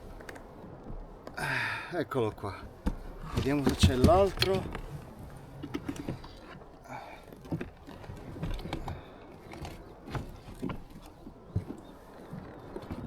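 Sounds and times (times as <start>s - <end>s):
fishing tackle clicks and knocks: 2.8s - 4.9s.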